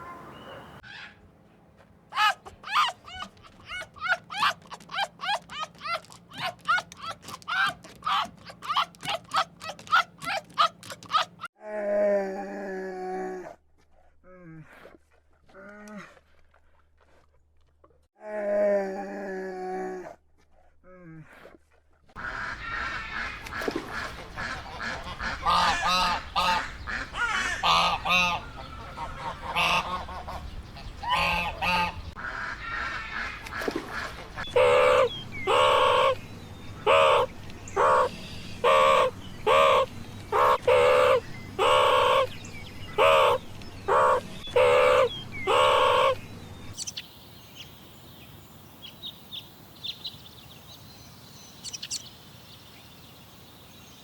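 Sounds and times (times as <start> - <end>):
animal calls: 2.1 - 11.5, 22.2 - 47.0.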